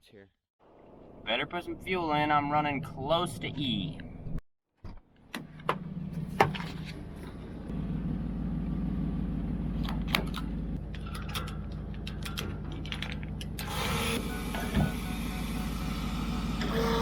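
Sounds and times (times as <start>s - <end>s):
motor humming: 5.4s - 17.0s.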